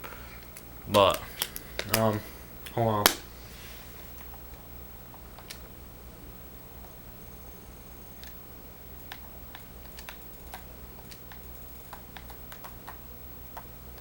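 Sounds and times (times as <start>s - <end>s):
low hum: 0.0s - 14.0s
light tapping clicks: 9.0s - 14.0s.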